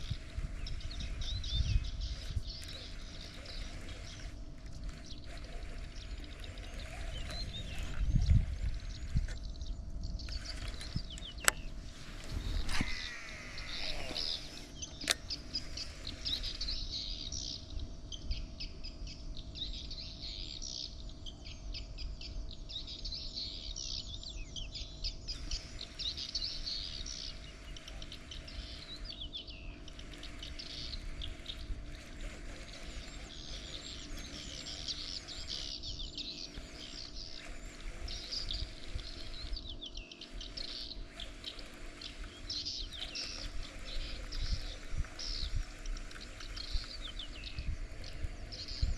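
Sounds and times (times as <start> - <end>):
birds chirping: 0.0 - 48.9
sharp click: 14.3 - 15.4.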